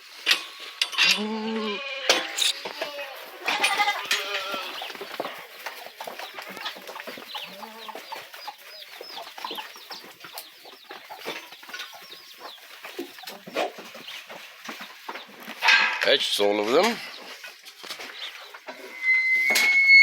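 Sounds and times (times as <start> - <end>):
goats shuffling and clattering: 0.0 - 1.4, 2.1 - 19.0
birds chirping rapidly: 3.8 - 15.7, 16.3 - 19.0.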